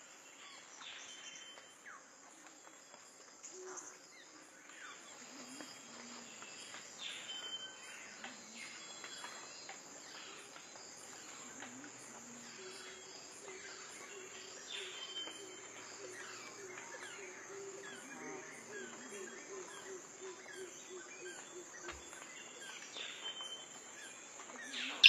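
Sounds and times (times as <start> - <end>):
birds calling and whistling: 18.8 - 25.0.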